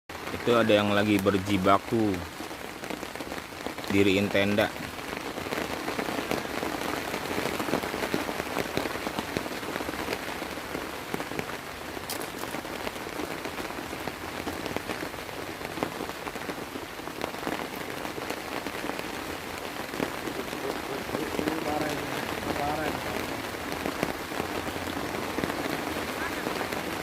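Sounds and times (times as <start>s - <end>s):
steady rain hiss: 0.1s - 27.0s.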